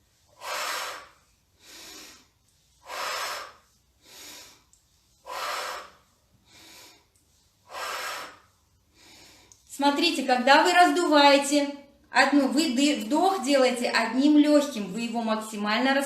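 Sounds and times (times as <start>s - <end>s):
woman breathing deeply: 0.1s - 9.7s.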